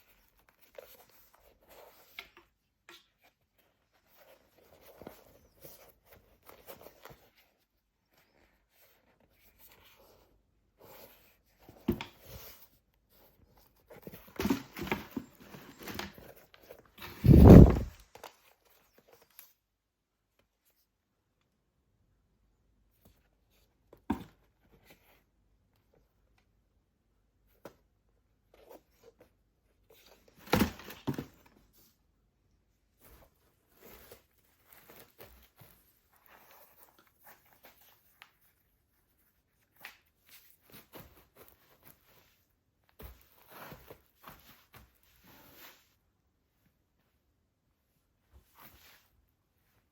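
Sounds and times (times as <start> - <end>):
paper and cardboard rustling: 8.2 - 19.5.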